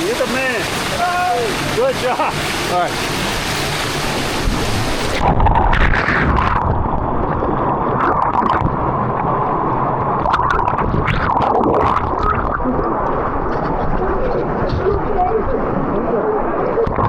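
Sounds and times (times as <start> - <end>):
underwater rushing and gurgling water: 0.0 - 17.0
faint bubbly clicks: 5.2 - 15.0.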